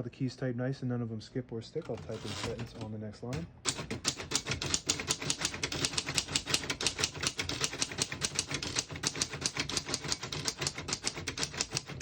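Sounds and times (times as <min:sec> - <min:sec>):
typewriter typing: 0:01.9 - 0:02.9, 0:03.6 - 0:12.0.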